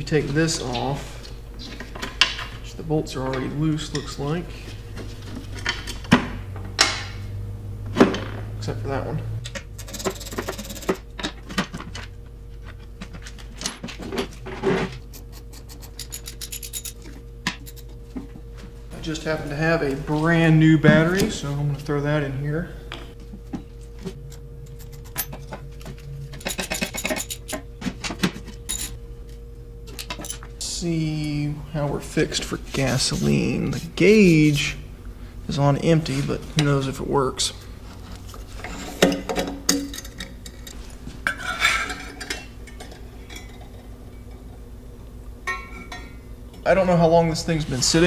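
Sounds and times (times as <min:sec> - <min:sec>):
metal parts clinking: 0:15.3 - 0:17.9, 0:26.3 - 0:27.6, 0:28.4 - 0:29.0
metallic clinks of tools: 0:15.6 - 0:17.0.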